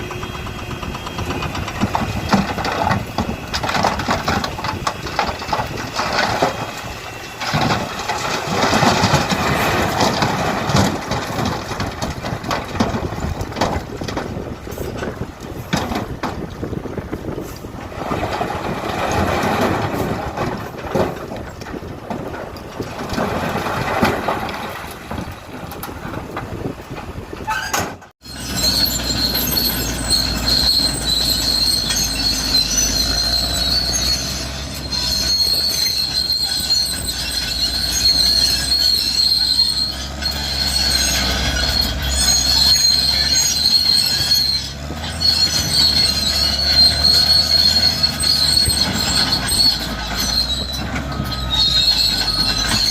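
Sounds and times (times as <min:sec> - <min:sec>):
heavy machinery rushing noise: 0:00.0 - 0:27.5
low engine rumble: 0:00.0 - 0:27.5
high metallic track squeal: 0:27.5 - 0:52.9.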